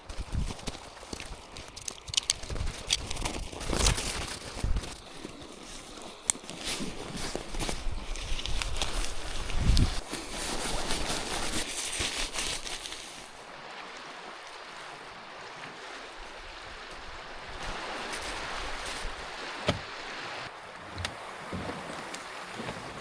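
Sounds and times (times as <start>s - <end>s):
water lapping and splashing: 0.0s - 23.0s
knock on canoe: 19.6s - 20.0s.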